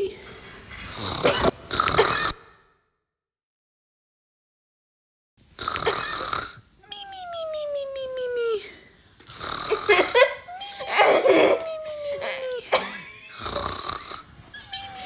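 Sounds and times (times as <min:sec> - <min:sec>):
person imitating a snore: 0:09.4 - 0:15.0.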